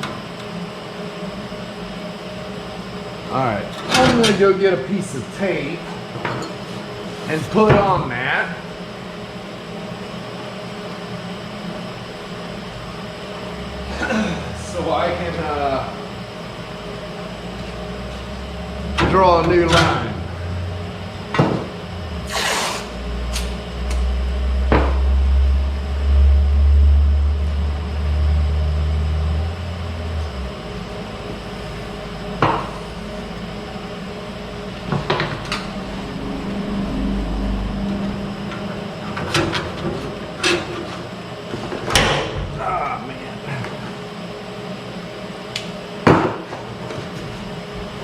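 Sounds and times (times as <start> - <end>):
low rumble: 31.3 - 40.4.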